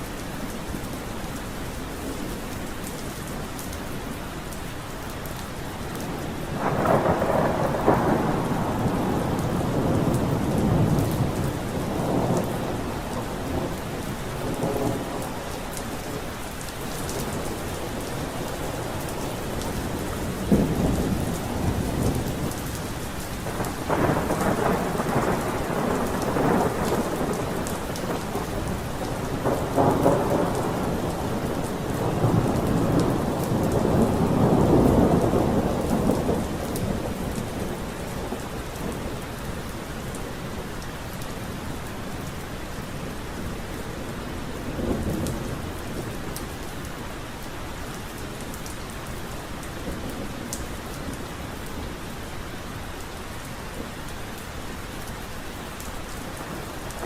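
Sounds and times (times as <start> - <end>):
steady rain: 0.0 - 57.0
rolling thunder: 6.5 - 13.8, 23.4 - 39.3.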